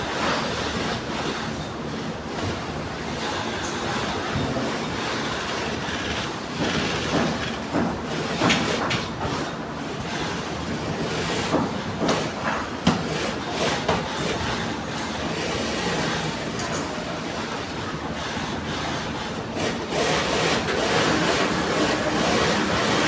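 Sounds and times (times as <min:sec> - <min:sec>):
sewing machine clattering: 0:05.3 - 0:07.8.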